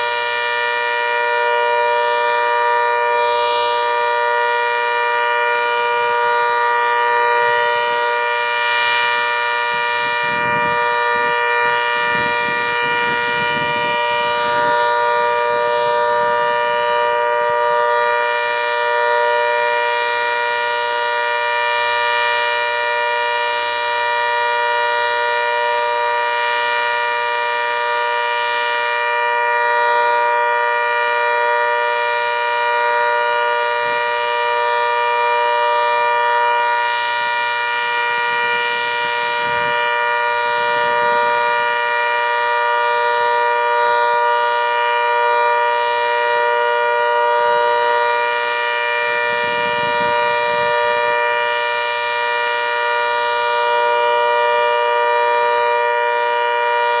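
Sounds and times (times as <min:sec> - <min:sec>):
warning siren steady chord: 0:00.0 - 0:57.0.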